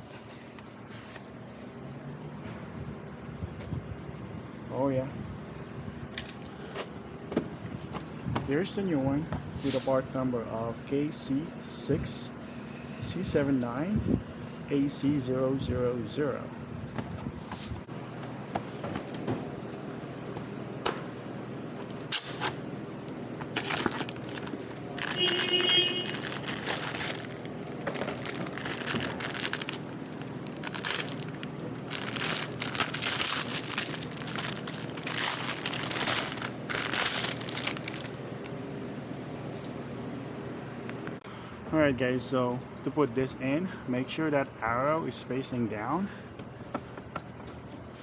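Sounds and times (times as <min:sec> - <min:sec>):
plastic packaging crinkling: 0:23.5 - 0:38.5.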